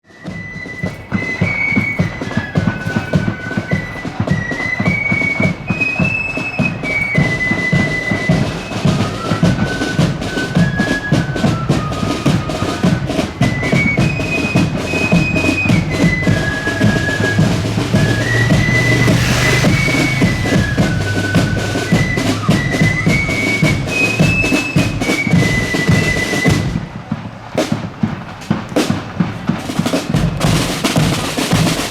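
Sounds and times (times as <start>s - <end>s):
flute melody: 0.0s - 31.9s
snare drum rolls: 0.1s - 31.9s
bass drum beat: 0.8s - 26.1s, 27.6s - 31.9s.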